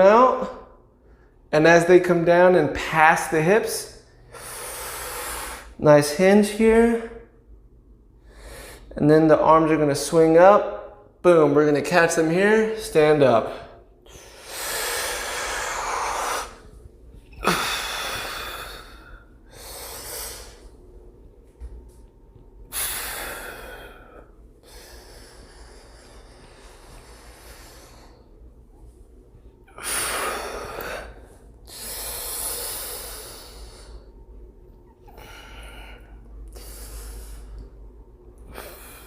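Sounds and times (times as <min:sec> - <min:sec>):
man breathing forcefully: 0:04.1 - 0:05.8, 0:08.2 - 0:09.0, 0:14.0 - 0:21.0, 0:22.6 - 0:28.6, 0:29.6 - 0:34.3, 0:35.1 - 0:39.0.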